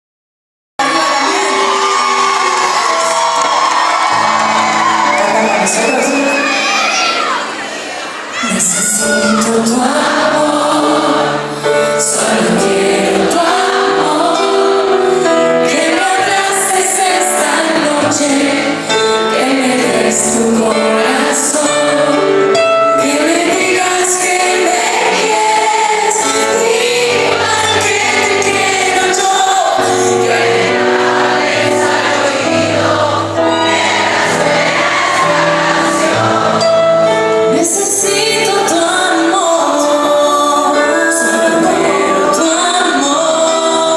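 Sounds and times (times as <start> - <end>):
women singing pop song: 8.5 - 14.6, 15.6 - 22.3, 23.0 - 31.3, 37.5 - 43.9.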